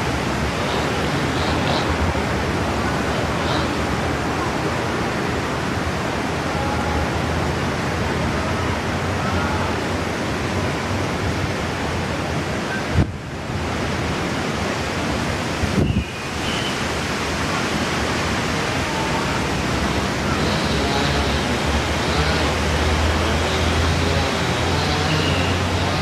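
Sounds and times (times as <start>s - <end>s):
strong wind rushing: 9.8s - 18.8s.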